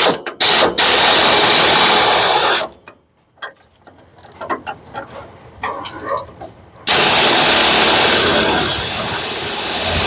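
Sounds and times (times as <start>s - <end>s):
air ratchet buzzing: 0.0s - 2.7s, 6.9s - 10.0s
tools clicking and knocking: 2.7s - 6.6s.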